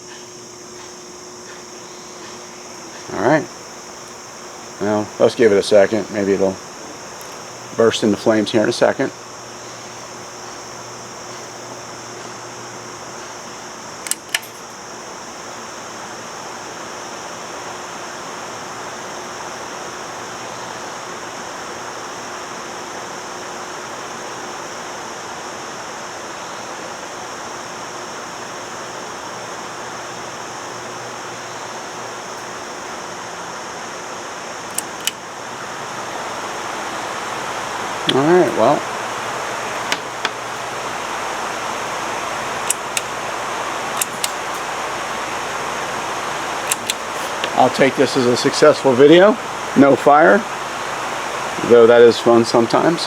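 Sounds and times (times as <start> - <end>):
fan motor running: 0.0 - 53.0
sharp clicks: 14.0 - 14.7, 34.7 - 35.2, 42.4 - 44.8, 46.1 - 47.9.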